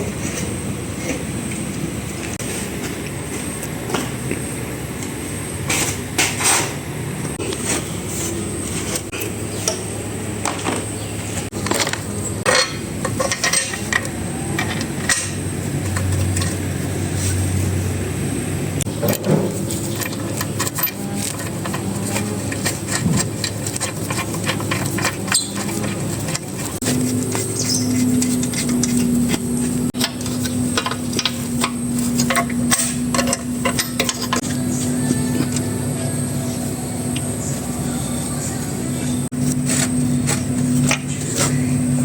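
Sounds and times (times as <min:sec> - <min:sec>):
low hum: 0:00.0 - 0:42.0
hand tools clinking on metal: 0:11.6 - 0:16.6, 0:19.0 - 0:37.3.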